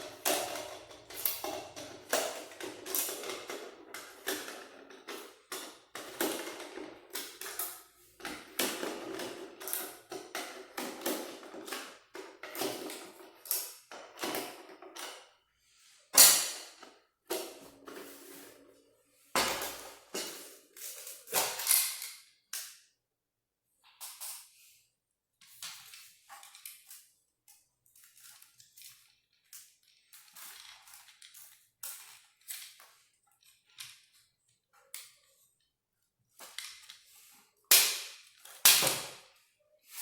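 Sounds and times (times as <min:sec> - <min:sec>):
hands clicking and tapping parts: 0:00.0 - 0:15.3, 0:36.4 - 0:39.4.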